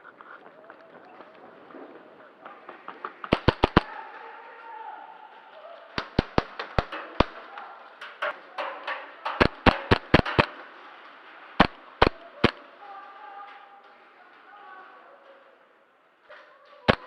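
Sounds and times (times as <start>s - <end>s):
airsoft gun shots: 3.1s - 4.0s, 6.0s - 7.6s, 9.3s - 10.6s, 11.6s - 12.6s.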